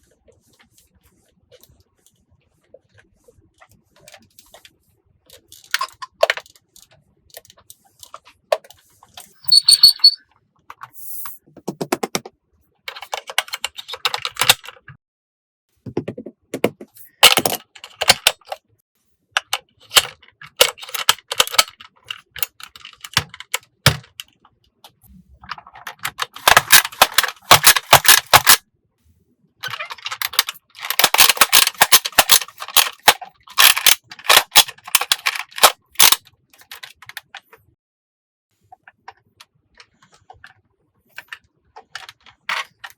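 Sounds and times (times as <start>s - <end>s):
plastic parts clicking: 5.3s - 10.9s, 12.9s - 14.9s, 17.2s - 18.6s, 19.4s - 28.6s, 29.6s - 37.6s, 41.2s - 42.9s.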